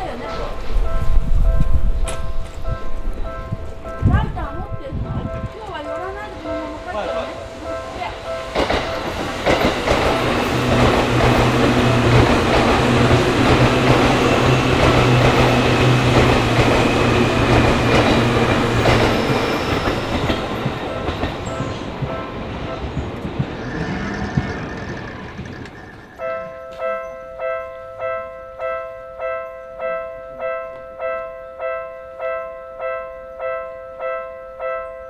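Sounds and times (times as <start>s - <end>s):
level crossing bell ringing: 0.0s - 23.0s
train wheels clattering over rail joints: 5.3s - 26.3s.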